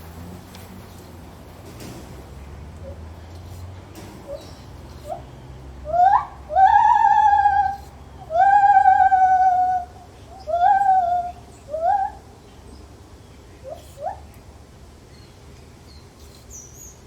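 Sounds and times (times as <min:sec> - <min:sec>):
gibbon hooting calls: 0:05.0 - 0:12.4.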